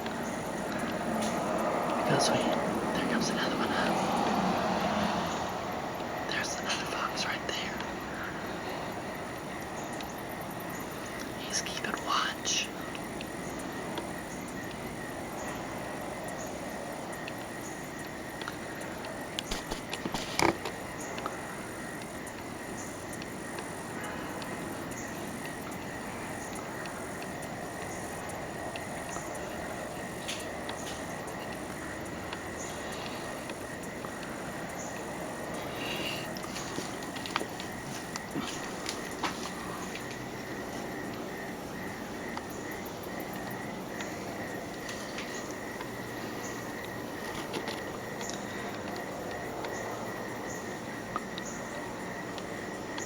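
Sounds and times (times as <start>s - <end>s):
insects chirping: 0.0s - 53.0s
low background hum: 0.0s - 53.0s
outdoor background hiss: 0.0s - 53.0s.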